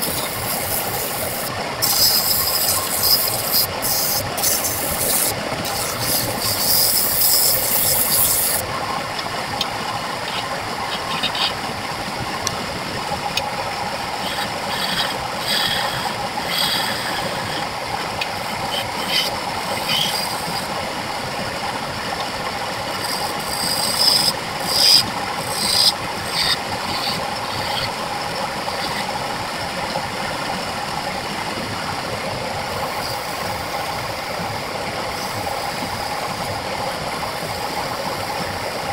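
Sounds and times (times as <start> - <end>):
turning tool scraping wood: 0.0 - 8.7, 10.2 - 11.7, 14.1 - 20.8, 22.9 - 29.2
wood lathe running: 0.0 - 30.6.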